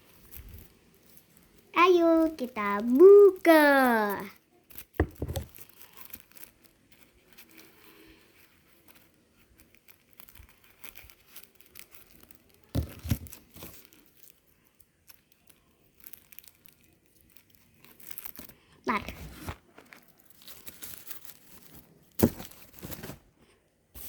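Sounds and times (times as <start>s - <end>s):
plastic wrapper crinkling: 4.7s - 23.2s
knocks: 5.0s - 5.5s.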